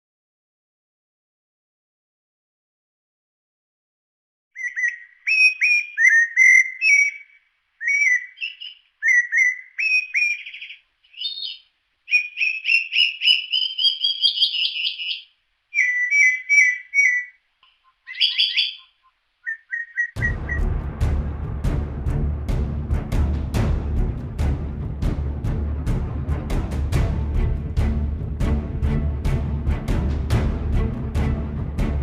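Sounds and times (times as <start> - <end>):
bird song whistled notes: 4.6 - 20.8.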